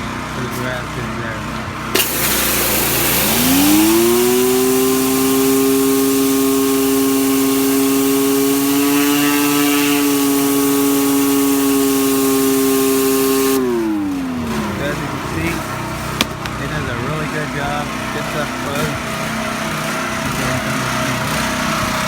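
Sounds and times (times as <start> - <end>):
whine of spinning nozzles: 1.8 - 22.0
water jets hissing: 1.9 - 16.7.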